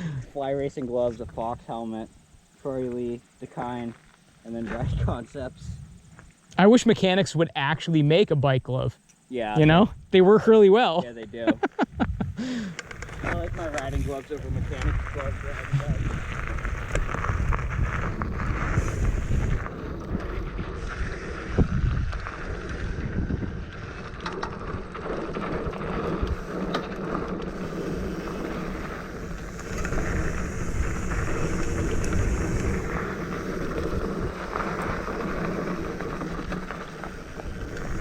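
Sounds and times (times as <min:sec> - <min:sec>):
wind buffeting microphone: 0:04.6 - 0:06.3, 0:09.4 - 0:10.3, 0:11.2 - 0:38.0
tyres rumbling on dirt: 0:09.4 - 0:38.0
bike rattling: 0:10.5 - 0:38.0.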